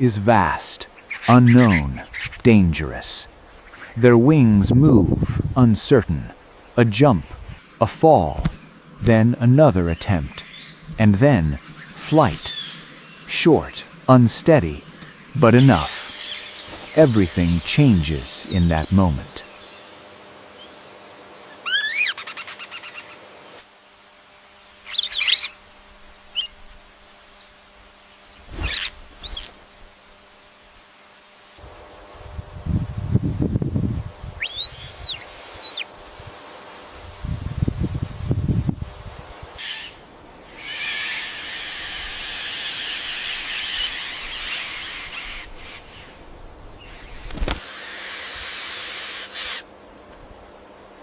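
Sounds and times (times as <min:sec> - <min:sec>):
bird calls: 0:00.6 - 0:02.6, 0:03.4 - 0:04.0, 0:06.4 - 0:23.6, 0:24.6 - 0:30.0, 0:34.4 - 0:35.9, 0:39.6 - 0:49.7
sharp bird chirps: 0:34.4 - 0:35.9.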